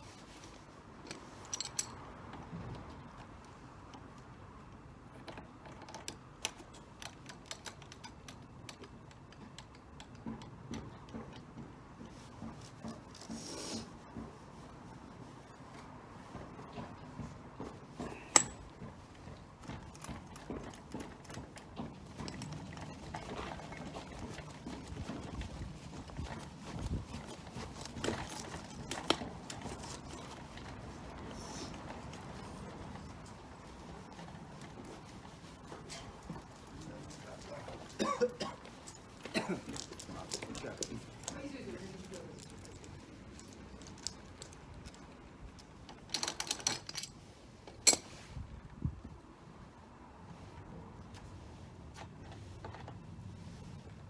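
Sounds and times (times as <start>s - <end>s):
light clicks and ticks: 3.4s - 11.5s
tools knocking and clicking: 5.2s - 11.8s, 18.0s - 30.6s.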